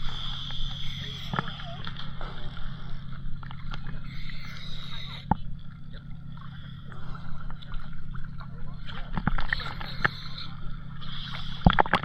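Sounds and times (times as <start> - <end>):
boat engine droning: 0.0 - 12.0.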